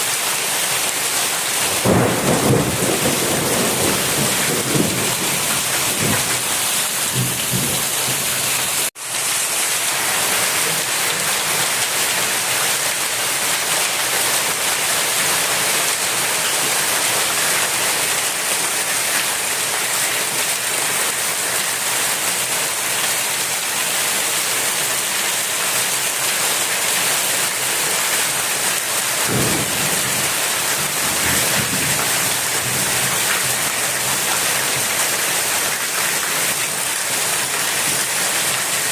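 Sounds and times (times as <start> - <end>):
heavy rain pouring: 0.0 - 38.9
low thunder rumbles: 1.8 - 8.4.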